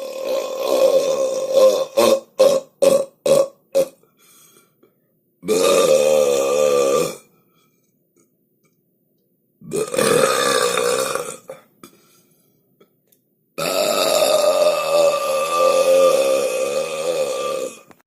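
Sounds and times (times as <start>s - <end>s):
person burping: 0.0s - 4.0s, 5.4s - 7.3s, 9.6s - 11.7s, 13.6s - 18.0s.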